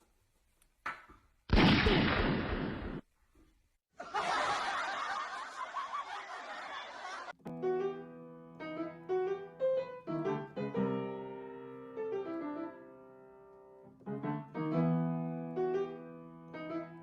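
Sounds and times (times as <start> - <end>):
laughter: 4.0 - 7.4.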